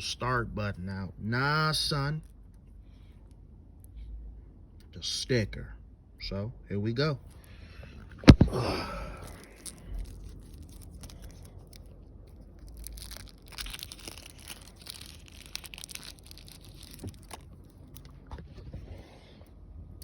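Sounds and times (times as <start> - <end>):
faint crinkling: 7.2 - 20.0
packet tearing: 8.2 - 18.2.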